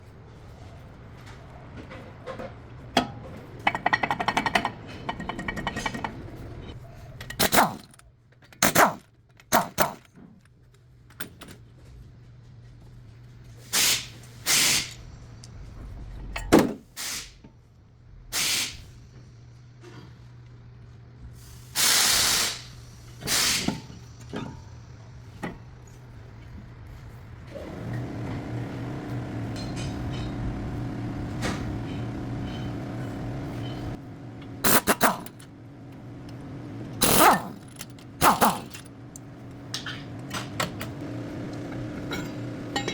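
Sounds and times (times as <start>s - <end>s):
short loud hissing bursts: 13.7s - 15.0s, 17.0s - 17.4s, 18.3s - 18.9s, 21.5s - 23.9s
steady low hum: 22.7s - 42.9s.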